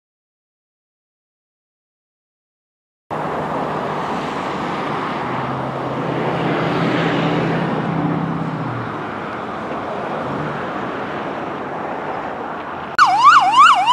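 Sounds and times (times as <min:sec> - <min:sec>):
road traffic rushing past: 0:03.1 - 0:13.9.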